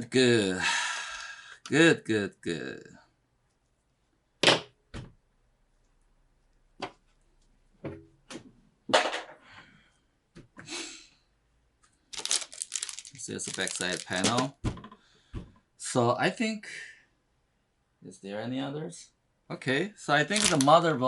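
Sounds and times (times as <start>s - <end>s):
computer parts clicking and knocking: 13.8s - 15.0s, 20.3s - 20.8s.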